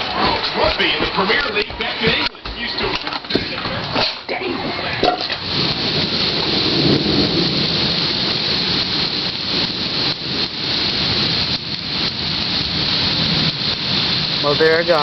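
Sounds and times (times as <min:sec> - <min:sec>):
heavy rain pouring: 0:00.0 - 0:15.0
low thunder rumble: 0:04.7 - 0:15.0.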